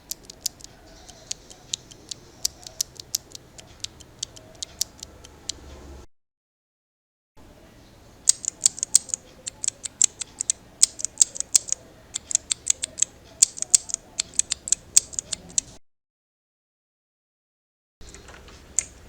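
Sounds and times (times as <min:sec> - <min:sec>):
mechanical keyboard key clicks: 0:00.0 - 0:05.6, 0:08.3 - 0:15.8.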